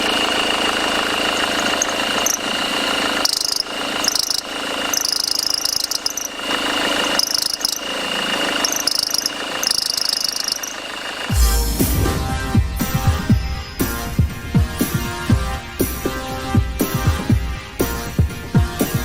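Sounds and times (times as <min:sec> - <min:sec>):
engine belt chirping and squealing: 0:00.0 - 0:11.4
steady engine whine: 0:00.0 - 0:18.5.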